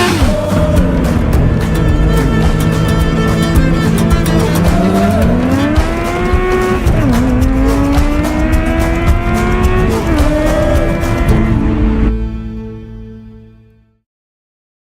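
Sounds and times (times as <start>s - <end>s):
vehicle engine accelerating: 0.0s - 13.2s.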